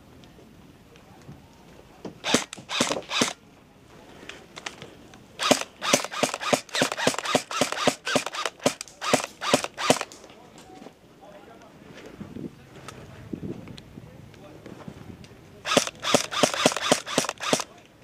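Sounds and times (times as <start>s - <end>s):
airsoft gun shots: 2.2s - 3.4s, 5.4s - 10.2s, 15.7s - 17.8s.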